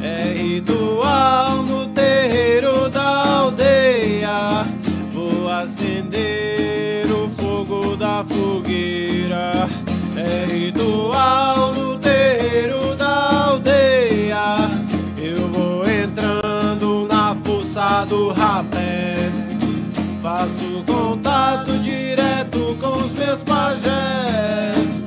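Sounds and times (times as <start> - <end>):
person singing: 0.0 - 25.0
strummed acoustic guitar: 0.0 - 25.0.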